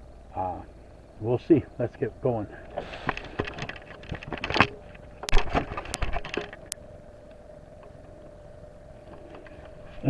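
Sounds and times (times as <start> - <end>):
faint steady hum: 0.0 - 10.0
objects being moved and rustled: 2.6 - 6.8.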